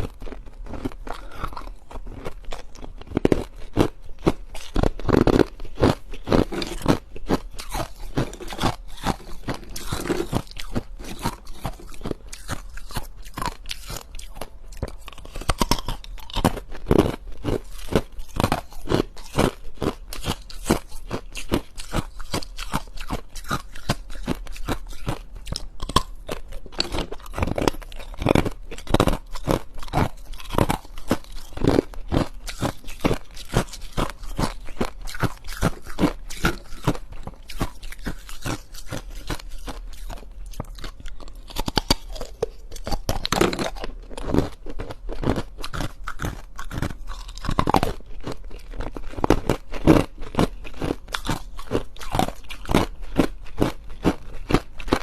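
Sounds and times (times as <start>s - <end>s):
ice being chewed: 0.0s - 55.0s.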